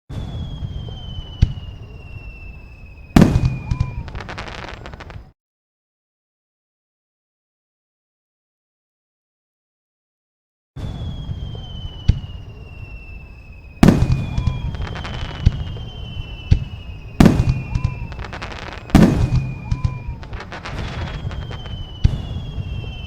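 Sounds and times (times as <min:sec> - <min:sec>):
dense firework crackling: 0:00.1 - 0:05.3, 0:10.8 - 0:23.0
firework bursts: 0:00.1 - 0:05.3, 0:10.8 - 0:23.0
firework whistles dropping in pitch: 0:00.1 - 0:05.3, 0:10.8 - 0:23.0.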